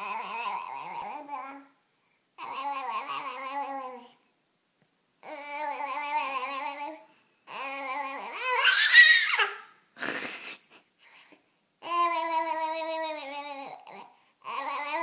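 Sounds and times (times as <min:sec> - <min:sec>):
baby squealing: 0:07.8 - 0:09.7.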